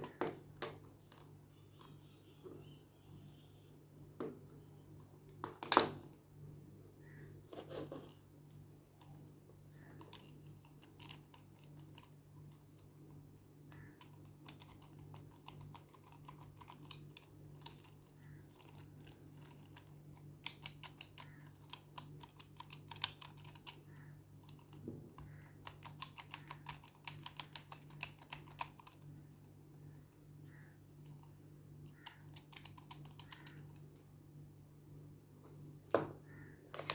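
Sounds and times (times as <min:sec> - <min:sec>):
plastic toy clicks and taps: 0:00.0 - 0:01.3, 0:24.5 - 0:29.0.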